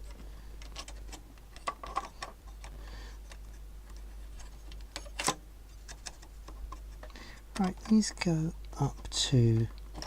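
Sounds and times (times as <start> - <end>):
steady low hum: 0.0 - 10.0
tools clicking and tapping: 6.0 - 10.0.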